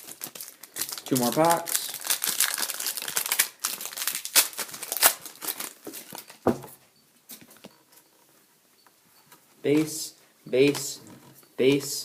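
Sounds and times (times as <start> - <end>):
card pack wrapper crinkling and tearing: 0.0 - 6.4.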